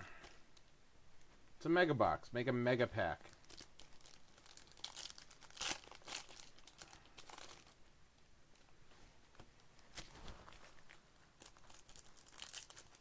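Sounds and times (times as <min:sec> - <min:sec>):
plastic wrappers crinkling: 0:03.2 - 0:07.8, 0:09.7 - 0:13.0.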